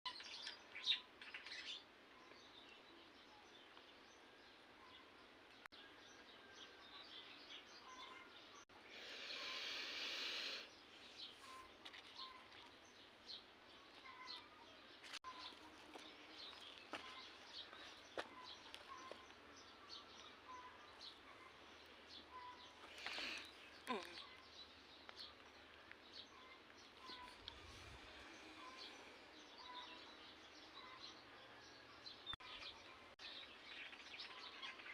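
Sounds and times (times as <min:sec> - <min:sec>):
small birds chirping: 0:00.1 - 0:34.9
burst of hiss: 0:09.0 - 0:10.7.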